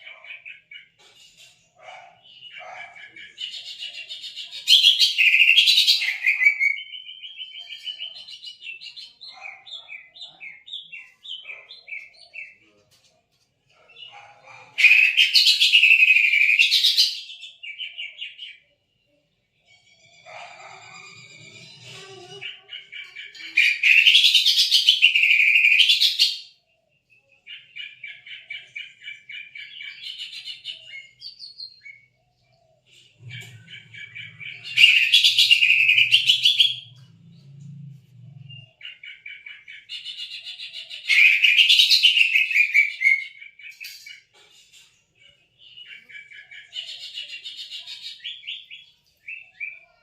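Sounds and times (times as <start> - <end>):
bird singing trilled phrases: 19.6 - 44.3.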